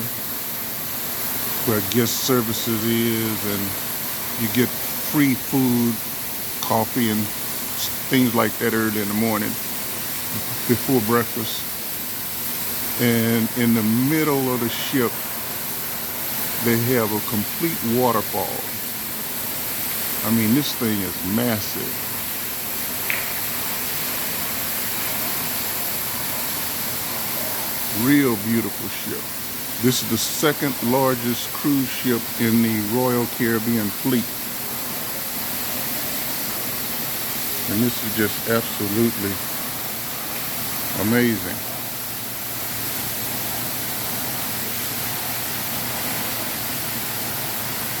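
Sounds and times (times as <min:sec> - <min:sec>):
indoor waterfall rushing: 0:00.0 - 0:48.0.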